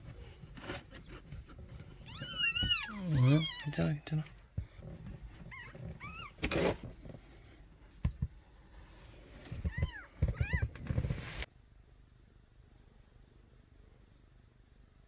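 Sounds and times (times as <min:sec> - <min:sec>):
rustling: 0:00.0 - 0:11.5
kittens meowing: 0:02.0 - 0:04.1, 0:05.4 - 0:06.4, 0:09.6 - 0:11.0.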